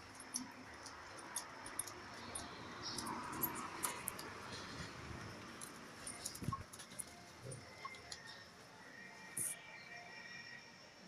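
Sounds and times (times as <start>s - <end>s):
light jingling: 0.0s - 8.5s.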